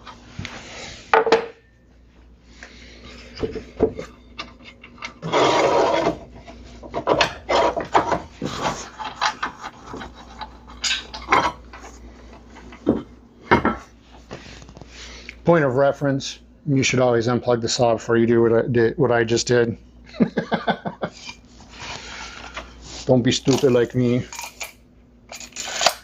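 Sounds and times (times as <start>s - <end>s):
wood scraping: 3.3s - 12.0s.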